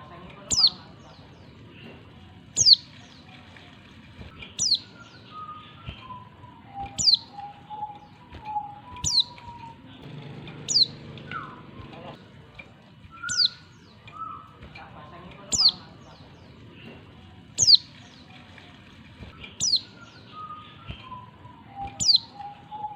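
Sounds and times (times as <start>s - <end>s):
bird calling high thin notes: 4.4s - 12.2s.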